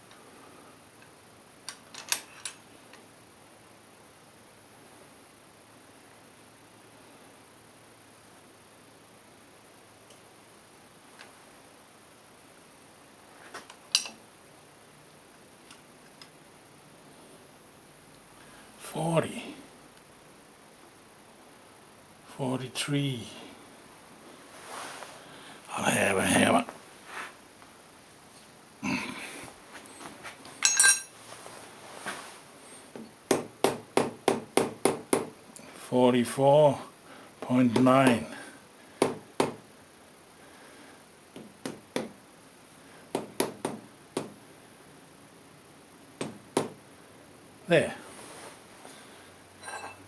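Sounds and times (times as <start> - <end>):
faint steady hiss: 0.0 - 50.0
sharp metal clink: 30.6 - 31.2, 49.6 - 50.0.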